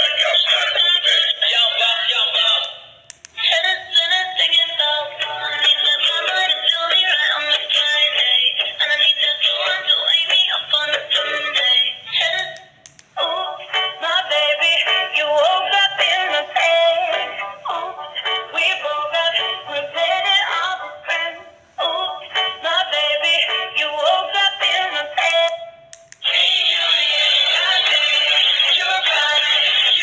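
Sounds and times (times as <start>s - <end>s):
toy playing tinny synthetic singing: 0.0s - 30.0s.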